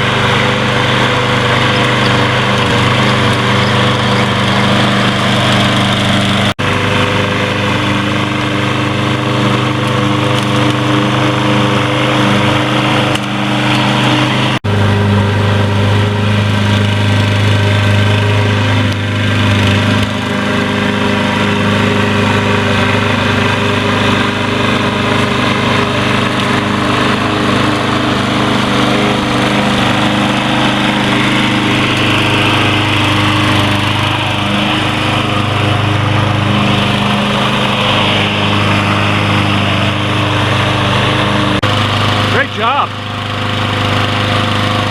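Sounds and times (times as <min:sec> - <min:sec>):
lawn mower engine running: 0:00.0 - 0:44.9.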